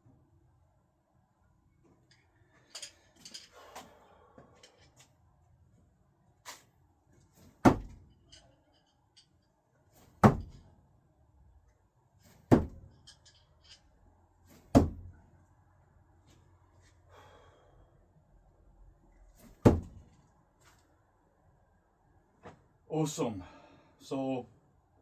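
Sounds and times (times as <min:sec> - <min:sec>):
screwdrivers thunking into target: 0:07.4 - 0:09.3, 0:10.0 - 0:10.7, 0:12.2 - 0:13.8, 0:14.5 - 0:15.2, 0:19.4 - 0:20.2.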